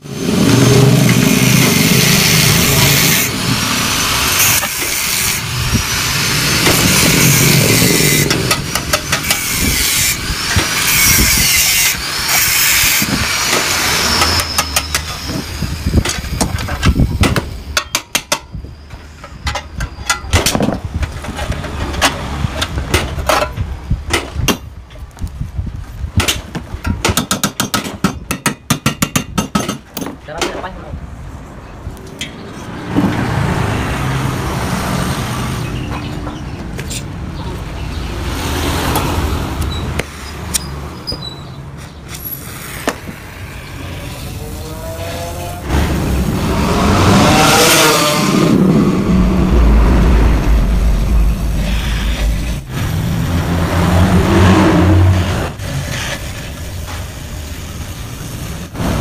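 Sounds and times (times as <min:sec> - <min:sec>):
power tool grinding metal: 0:00.1 - 0:17.6
sharp metal knocks: 0:26.2 - 0:30.6.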